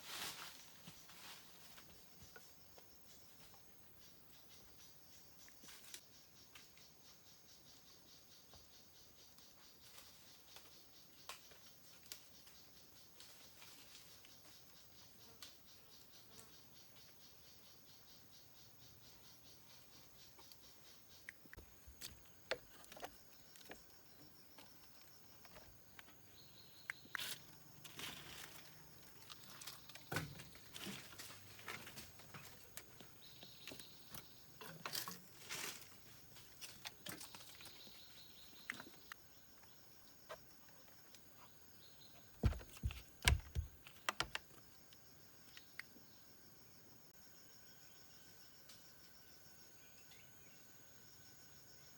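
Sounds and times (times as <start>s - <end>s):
insects chirring: 0.1s - 51.9s
taps rustles and knocks: 42.3s - 44.6s
heavy thumps: 42.4s - 44.4s.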